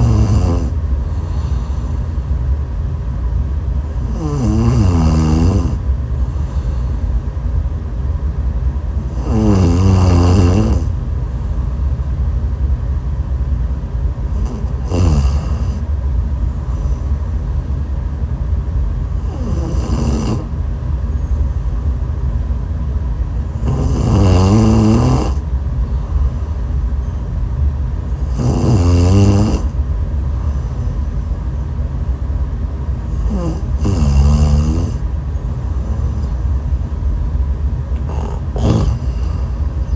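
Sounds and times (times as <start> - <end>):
woman snoring: 0.0 - 2.0, 4.0 - 5.8, 9.0 - 11.0, 14.4 - 15.8, 19.2 - 20.5, 23.6 - 25.4, 28.2 - 29.8, 33.1 - 35.0, 38.0 - 39.9.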